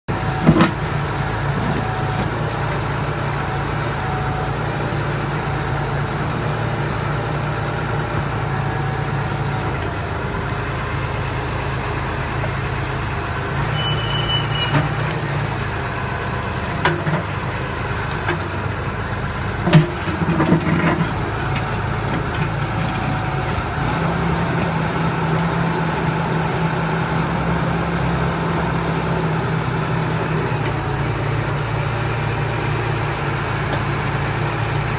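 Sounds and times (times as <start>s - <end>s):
backhoe diesel engine running: 0.1s - 34.9s
brief high squeak: 13.8s - 15.0s.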